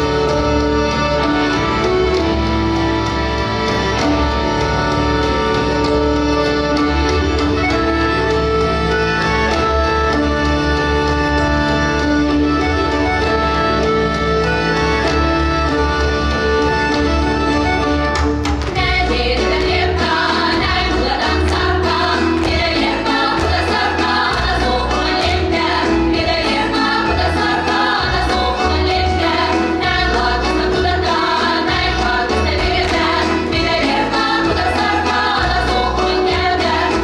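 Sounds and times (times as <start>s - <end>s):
folk dance music: 0.0s - 37.0s
group of voices singing: 18.7s - 37.0s.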